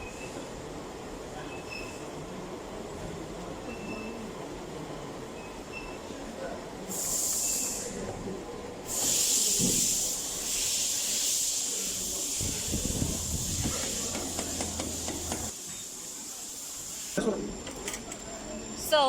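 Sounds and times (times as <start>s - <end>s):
high-pitched air hiss: 6.9s - 8.0s, 8.9s - 17.5s.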